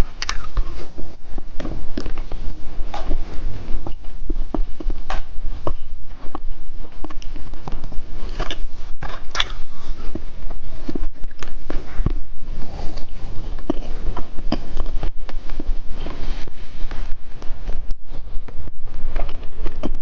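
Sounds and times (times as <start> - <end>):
wet mouth clicks: 0.0 - 0.8, 4.6 - 10.3, 13.0 - 15.0
candy crunching: 0.0 - 0.9.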